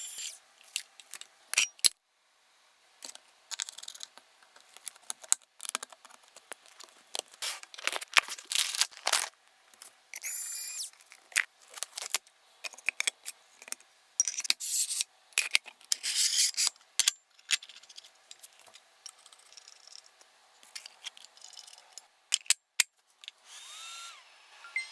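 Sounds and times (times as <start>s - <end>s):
plastic and metal parts rustling: 3.0s - 21.9s.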